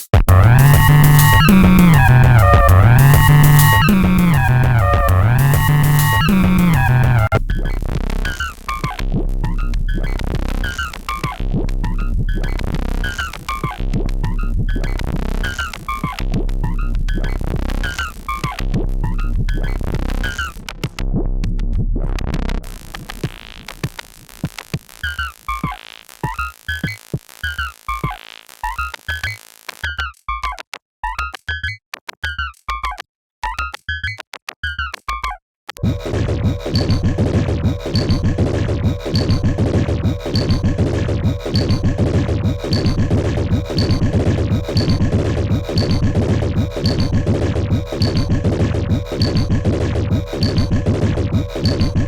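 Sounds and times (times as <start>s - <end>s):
electronic drum loop: 0.0s - 21.0s, 22.6s - 29.4s, 35.8s - 52.0s
synthesized blips: 0.1s - 20.8s, 35.8s - 52.0s
steady bass: 0.2s - 24.4s, 35.8s - 52.0s.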